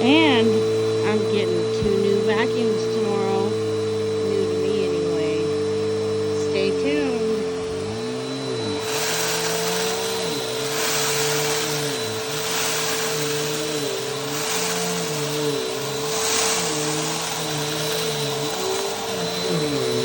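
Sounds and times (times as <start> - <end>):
vacuum cleaner running: 0.0 - 20.0.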